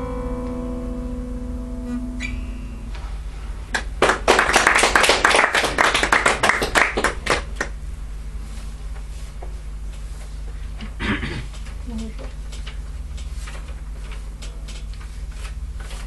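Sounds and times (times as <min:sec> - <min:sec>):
acoustic guitar chord ringing: 0:00.0 - 0:03.0
audience applauding: 0:03.8 - 0:07.8.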